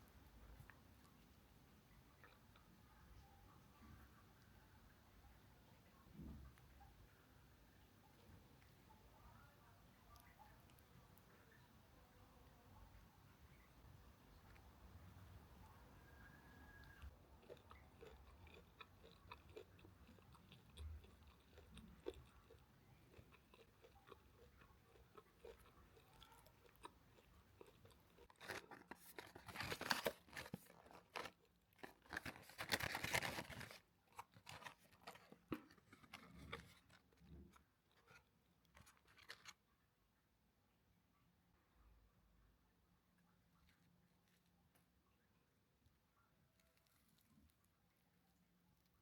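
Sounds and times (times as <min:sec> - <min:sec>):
crunching of crispy food: 0:16.1 - 0:39.7
person chewing: 0:16.8 - 0:39.6.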